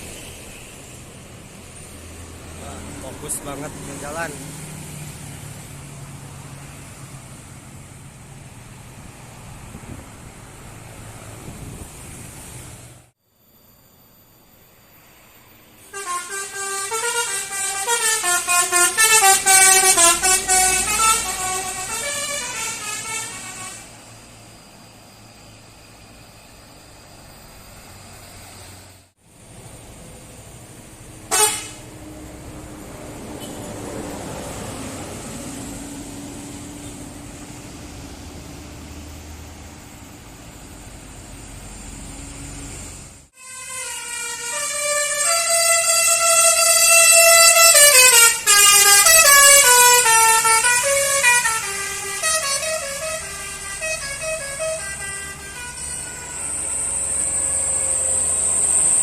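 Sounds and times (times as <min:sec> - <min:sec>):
bus engine drone: 0:00.0 - 0:59.0
multi-tone air horn melody: 0:15.8 - 0:24.0, 0:31.3 - 0:31.9, 0:43.4 - 0:56.8.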